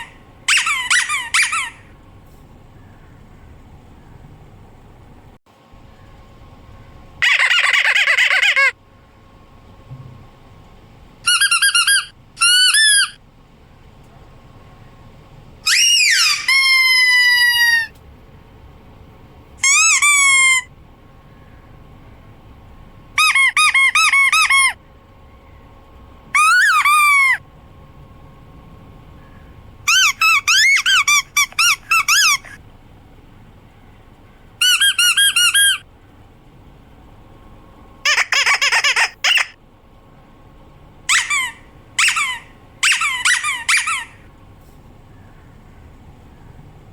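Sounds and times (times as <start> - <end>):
rubber squeaky toy squeaking: 0.0 - 1.8, 7.2 - 8.7, 11.3 - 13.2, 15.7 - 17.9, 19.6 - 20.7, 23.2 - 24.8, 26.4 - 27.4, 29.9 - 32.6, 34.6 - 35.8, 38.1 - 39.6, 41.1 - 44.2.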